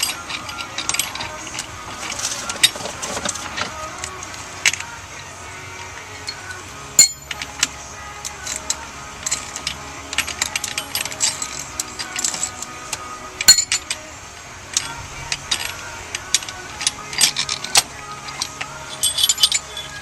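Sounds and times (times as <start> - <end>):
metal tools clinking: 0.0 - 4.9, 5.8 - 14.1, 14.7 - 20.0
sharp metallic clank: 7.0 - 7.6, 13.4 - 14.0.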